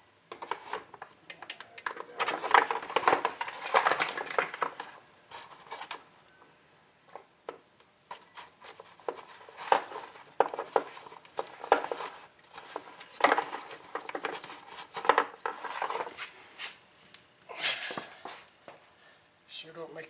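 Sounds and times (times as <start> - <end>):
small hard parts clicking and rattling: 0.3 - 6.0, 7.1 - 16.2.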